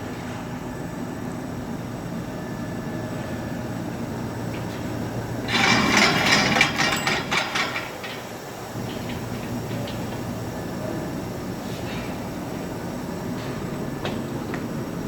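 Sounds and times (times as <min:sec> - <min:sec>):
machine rattling and clicking: 0:05.4 - 0:11.0.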